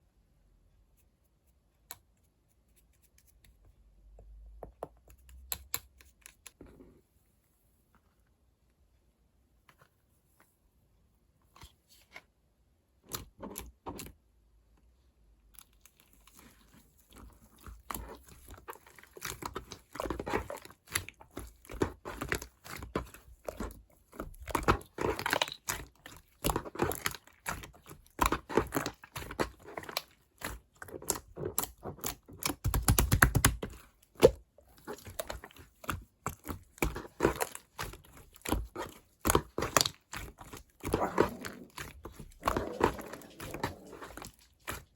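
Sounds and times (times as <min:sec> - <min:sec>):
slime squishing: 0:15.2 - 0:44.9.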